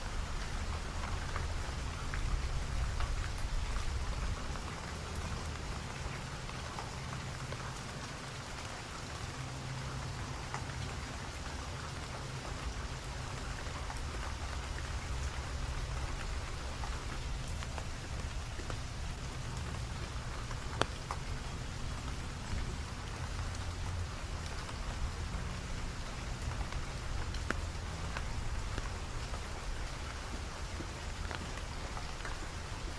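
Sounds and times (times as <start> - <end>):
sharp drip: 0.0 - 32.9
steady rain falling: 0.0 - 32.9
drops ticking: 12.0 - 32.9.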